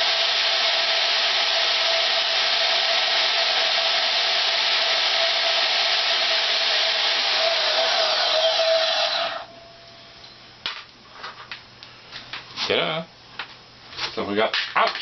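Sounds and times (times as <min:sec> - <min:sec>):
band saw cutting metal: 0:00.0 - 0:09.5.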